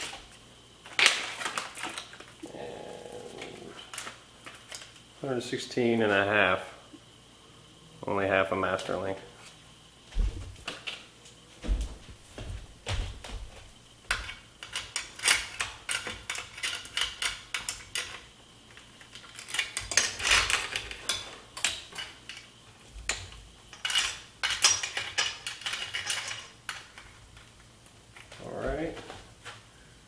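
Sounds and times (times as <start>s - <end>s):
bicycle chain clinking and rattling: 19.1s - 22.3s, 23.7s - 26.8s.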